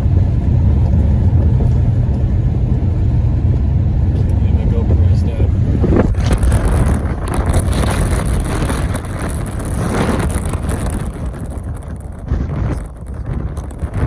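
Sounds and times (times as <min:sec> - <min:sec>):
wind gusting across microphone: 0:00.0 - 0:14.0.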